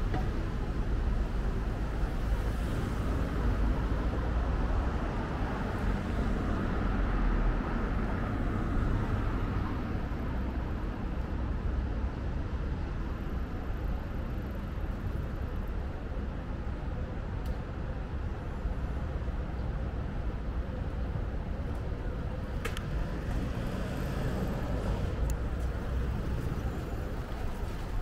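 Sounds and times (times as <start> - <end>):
road hum with deep rumble: 0.0 - 28.0
cars passing: 22.1 - 28.0.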